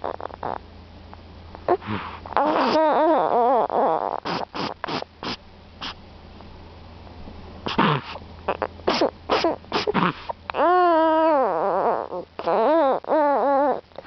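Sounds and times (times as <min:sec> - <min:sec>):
short sharp breaths: 0:01.7 - 0:02.4.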